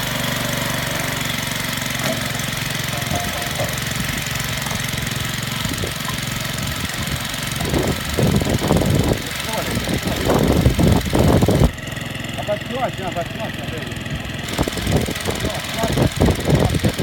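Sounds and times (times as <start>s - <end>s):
small engine running: 0.0s - 17.0s
loud knocks and clatter: 1.8s - 9.1s.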